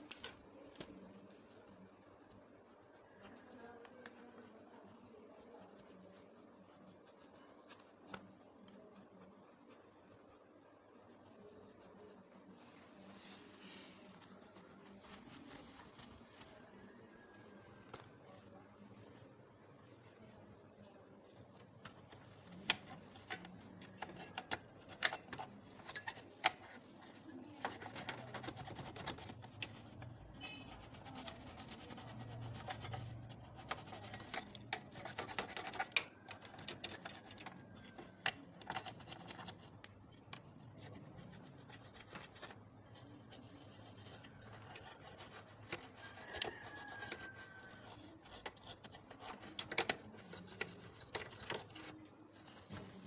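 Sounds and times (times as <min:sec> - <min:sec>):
brush rubbing and scraping: 0:00.9 - 0:17.6, 0:22.0 - 0:53.0
clicks and knocks of computer parts: 0:48.4 - 0:53.0.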